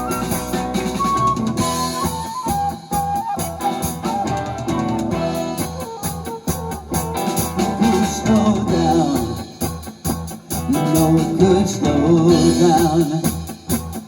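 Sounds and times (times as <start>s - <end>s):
drum kit: 0.0s - 14.0s
electric guitar: 0.0s - 14.0s.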